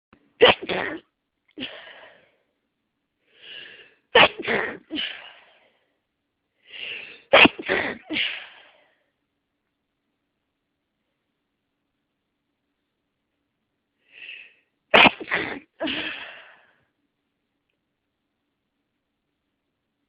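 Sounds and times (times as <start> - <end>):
person sneezing: 0.4 - 1.0, 4.2 - 5.5, 6.8 - 8.8, 14.9 - 16.6
quick breath in: 3.3 - 4.0, 6.6 - 7.3, 14.0 - 14.7.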